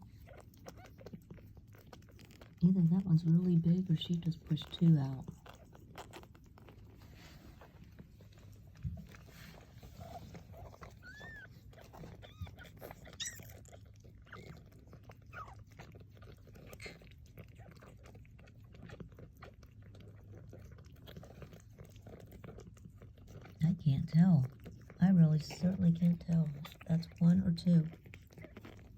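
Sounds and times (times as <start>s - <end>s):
cat licking and chewing: 0.0s - 28.9s.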